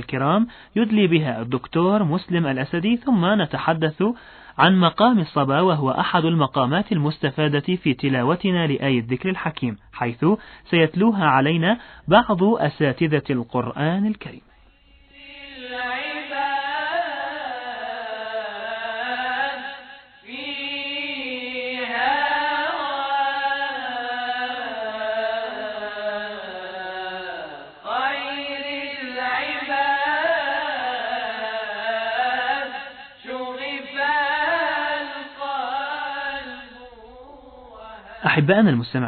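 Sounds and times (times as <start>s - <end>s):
solo voice chanting: 14.0s - 39.0s.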